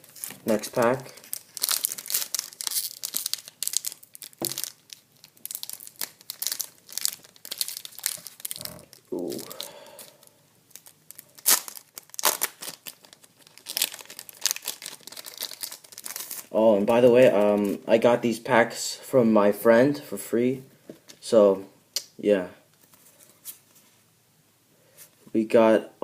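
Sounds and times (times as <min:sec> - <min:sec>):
foil wrapper tearing and crinkling: 0:00.0 - 0:16.5
person saying ooh: 0:08.6 - 0:09.6.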